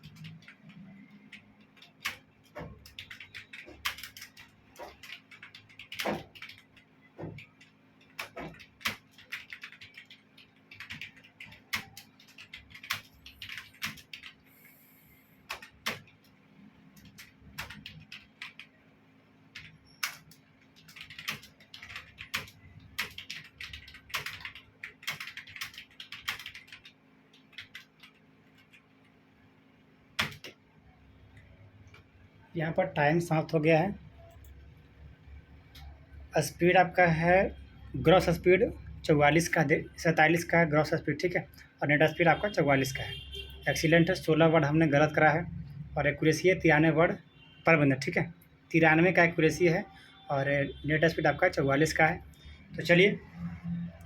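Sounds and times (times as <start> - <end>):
keyboard keys clicking: 0.0 - 14.4, 19.6 - 28.8.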